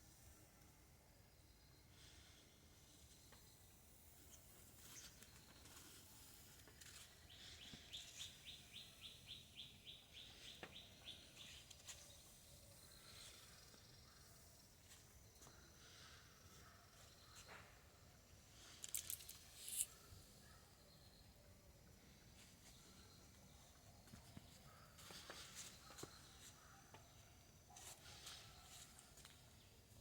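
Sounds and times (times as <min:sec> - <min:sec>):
bird chirping: 0:03.0 - 0:18.8.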